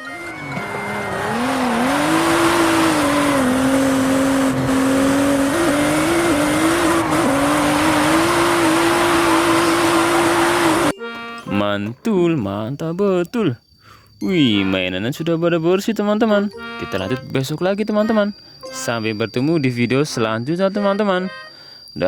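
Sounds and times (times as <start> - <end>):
race car engine: 0.0 - 11.4.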